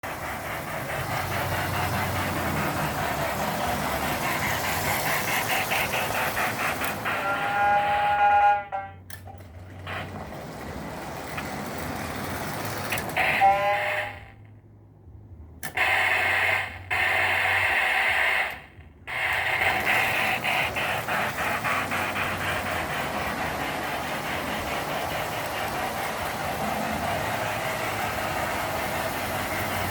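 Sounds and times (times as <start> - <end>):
model steam locomotive chuffing: 0.0 - 14.4, 15.6 - 29.9
electronic train whistle: 4.2 - 9.2, 13.1 - 14.4.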